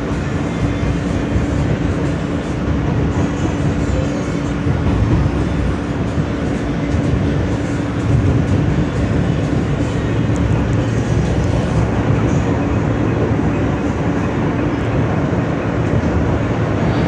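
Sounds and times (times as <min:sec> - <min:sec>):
steady hum: 0:00.0 - 0:17.0
subway wheels rumbling on rail: 0:00.0 - 0:17.0.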